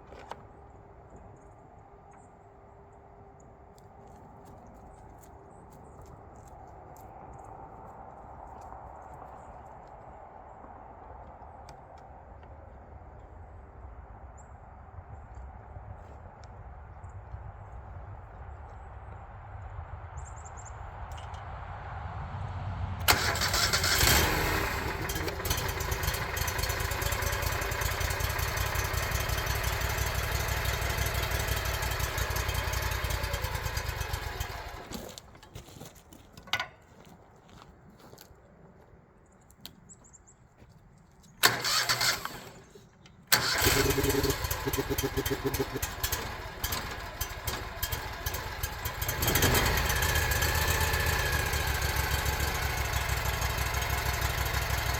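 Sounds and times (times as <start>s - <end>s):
loud engine burst: 23.0s - 34.9s, 43.3s - 54.9s
sawmill engine starting and running: 23.0s - 35.5s, 41.4s - 54.9s.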